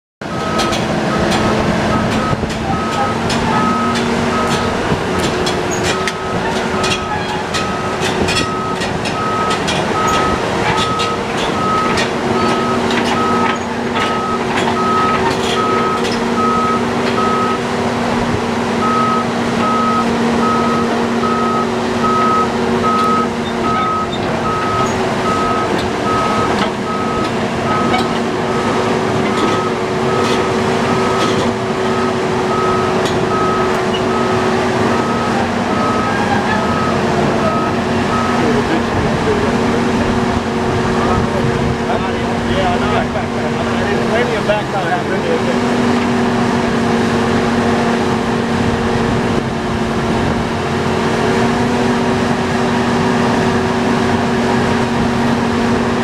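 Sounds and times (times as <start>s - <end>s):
alarm beeping: 0.2s - 17.7s, 18.8s - 38.9s
excavator engine droning: 0.2s - 56.0s
sharp clicks and knocks: 0.4s - 16.3s.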